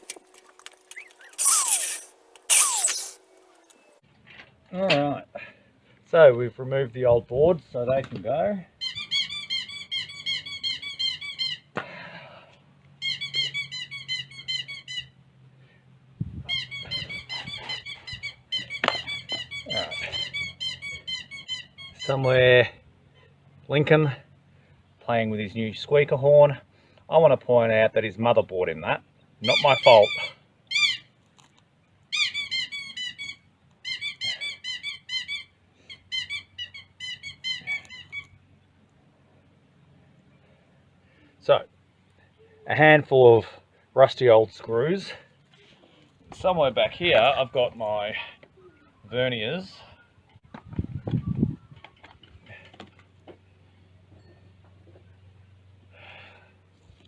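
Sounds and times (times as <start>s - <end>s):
toy squeaker horn squeaking: 0.0s - 3.8s.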